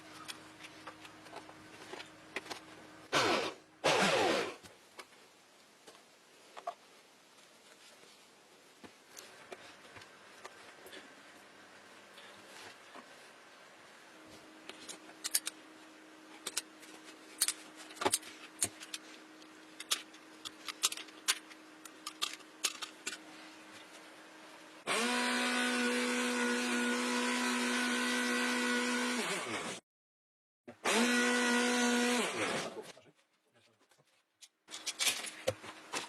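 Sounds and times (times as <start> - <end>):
parts clicking and knocking: 14.8 - 15.6, 16.4 - 19.1, 19.7 - 23.3, 34.4 - 36.0
vacuum motor whining: 24.9 - 29.8.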